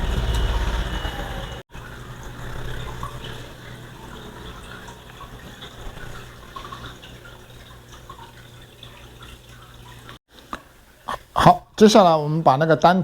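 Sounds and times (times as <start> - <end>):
steady low hum: 0.0 - 10.2.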